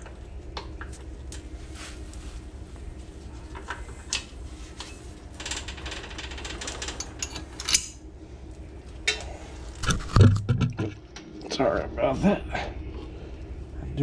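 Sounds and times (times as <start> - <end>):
drive chain clicking and rattling: 5.4 - 8.0.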